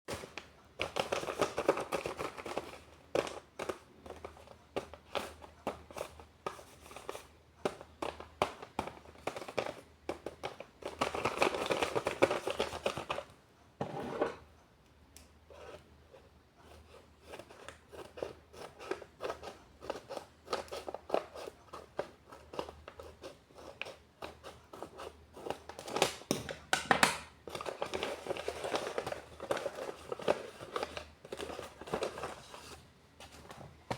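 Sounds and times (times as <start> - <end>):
paper crinkling and rustling: 0.1 - 13.3, 27.5 - 33.9.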